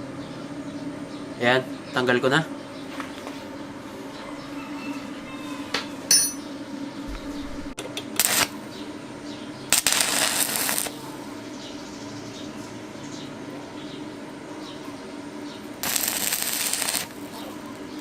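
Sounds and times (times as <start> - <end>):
metal parts and tools clinking: 6.1 - 6.4.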